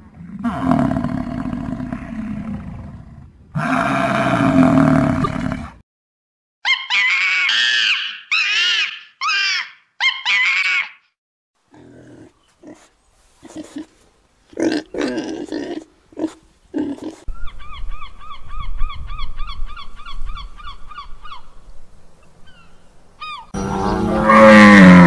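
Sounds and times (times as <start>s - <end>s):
rough roar-like animal call: 0.1s - 5.8s, 23.5s - 25.0s
short animal calls rising and falling: 6.6s - 11.1s.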